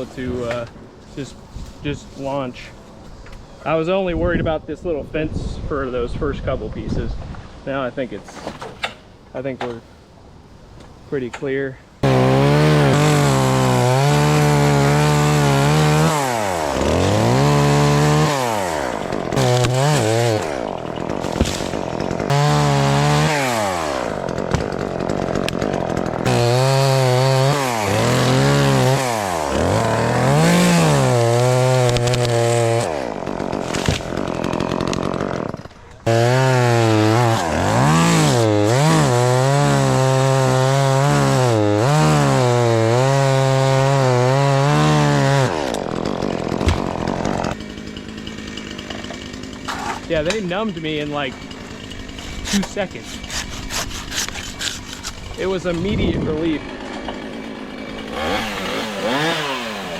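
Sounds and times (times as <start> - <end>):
chainsaw cutting wood: 12.0 - 59.9.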